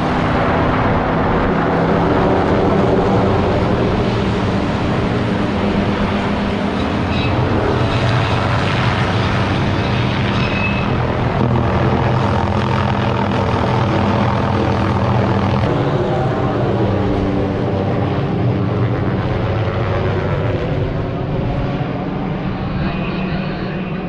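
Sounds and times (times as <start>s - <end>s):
helicopter rotor and engine drone: 0.0s - 24.0s.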